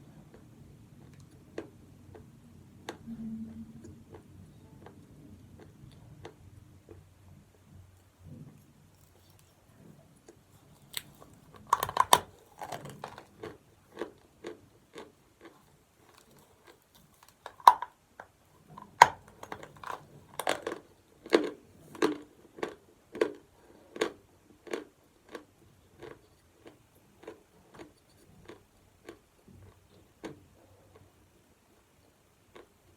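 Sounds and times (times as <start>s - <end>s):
person crunching and chewing chalk: 8.2s - 31.1s.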